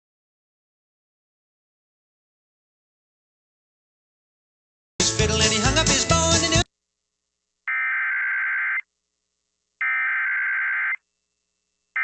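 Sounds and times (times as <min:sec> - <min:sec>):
music: 0:05.0 - 0:06.7
buzzy modem-like data tones: 0:07.6 - 0:08.9, 0:09.8 - 0:11.1.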